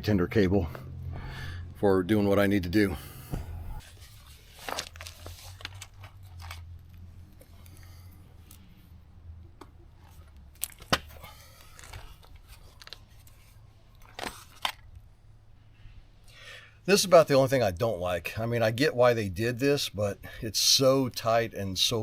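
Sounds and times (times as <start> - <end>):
rustling and handling noises: 3.0 - 8.9, 9.6 - 15.1.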